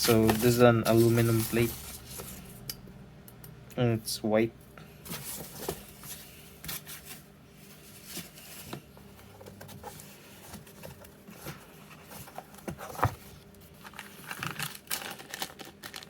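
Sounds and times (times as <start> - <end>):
packaging crinkling: 13.8 - 16.0.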